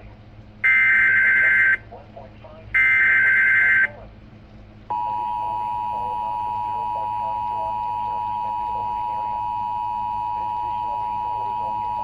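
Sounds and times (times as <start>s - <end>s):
continuous electronic beep: 0.6s - 1.8s, 2.8s - 3.9s, 4.9s - 12.0s.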